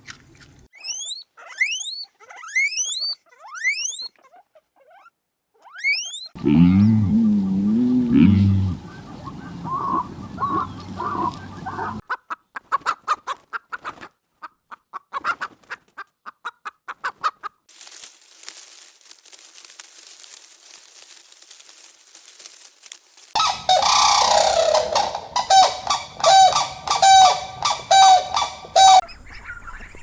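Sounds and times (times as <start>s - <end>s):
bird calling rapidly: 5.9s - 12.0s, 23.4s - 30.0s.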